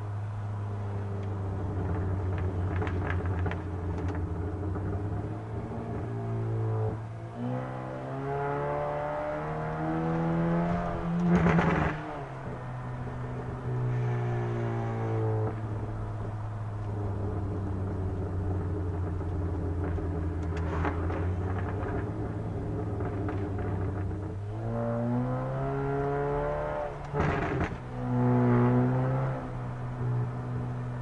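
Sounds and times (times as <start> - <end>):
car engine revving: 0.0 - 31.0
exhaust pops and bangs: 1.8 - 5.2, 11.2 - 12.0, 17.0 - 24.4, 27.0 - 27.8.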